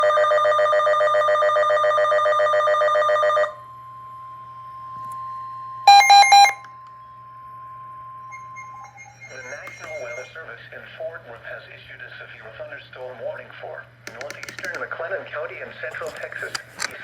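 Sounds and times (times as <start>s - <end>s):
pulsing alarm tone: 2.2s - 10.5s
faint steady tone: 3.6s - 10.8s
warbling chirp: 8.1s - 10.4s.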